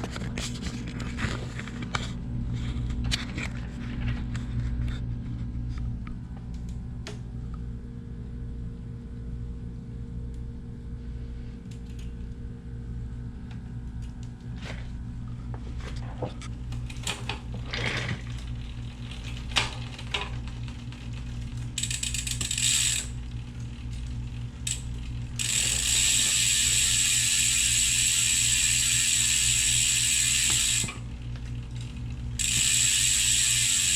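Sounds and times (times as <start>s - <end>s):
steady low hum: 0.0s - 33.9s
bicycle freewheel ratcheting: 16.7s - 33.9s.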